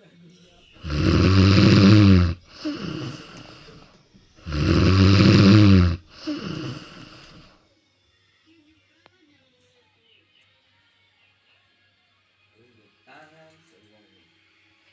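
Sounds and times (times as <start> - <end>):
cat snoring: 0.8 - 3.8, 4.4 - 7.5.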